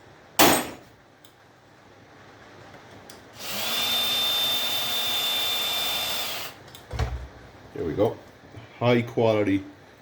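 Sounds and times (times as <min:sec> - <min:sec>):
electric drill whining: 0:03.4 - 0:06.6.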